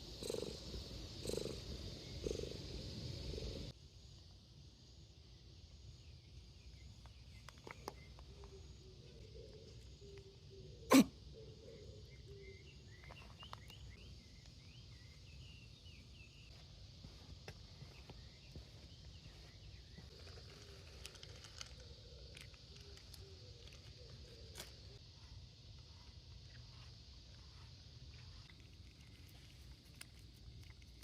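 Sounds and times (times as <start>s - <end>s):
cat purring: 0.1s - 2.6s
cat sneezing: 10.9s - 11.2s.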